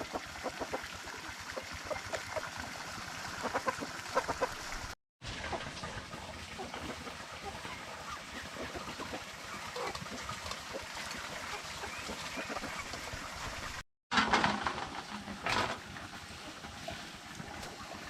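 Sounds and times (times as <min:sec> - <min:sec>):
ducks quacking: 0:00.0 - 0:02.5, 0:03.3 - 0:04.8, 0:10.7 - 0:13.3.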